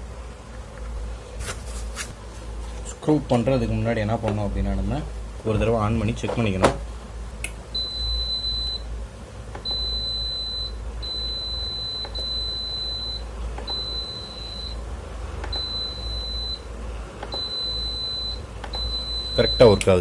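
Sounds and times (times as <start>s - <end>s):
steady low hum: 0.0s - 20.0s
stove control panel buzzer beeping: 7.8s - 8.8s, 9.6s - 14.8s, 15.5s - 16.7s, 17.3s - 20.0s.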